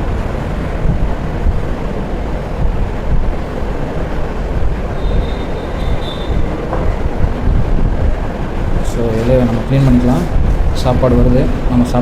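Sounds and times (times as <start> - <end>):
low rumbling noise: 1.3 - 12.0
faint high whistle: 1.6 - 8.8.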